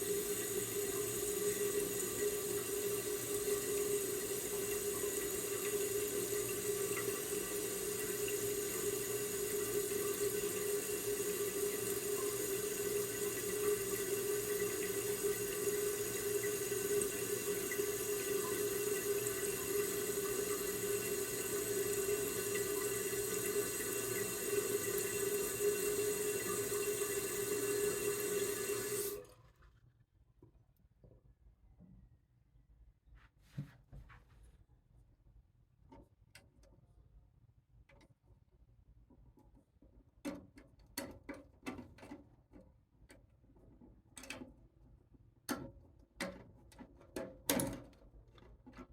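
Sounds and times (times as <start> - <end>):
toilet cistern refilling: 0.0 - 29.5.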